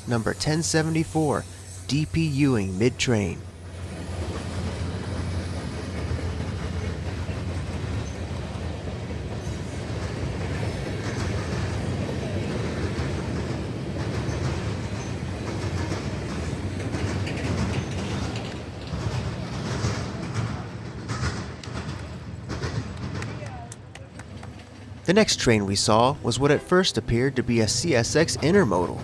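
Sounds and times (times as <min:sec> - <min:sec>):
train low rumble: 0:00.0 - 0:29.0
train wheels clacking on rails: 0:00.0 - 0:29.0.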